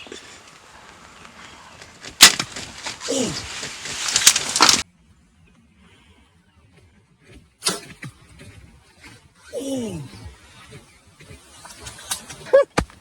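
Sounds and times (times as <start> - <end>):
turkey flapping and thrashing: 0.0 - 4.8
sharp bow snap: 7.6 - 7.9.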